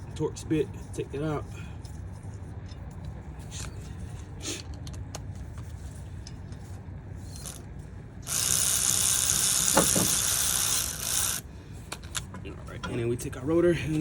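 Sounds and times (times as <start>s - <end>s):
power tool spinning out screw: 7.3s - 7.6s, 8.2s - 11.4s.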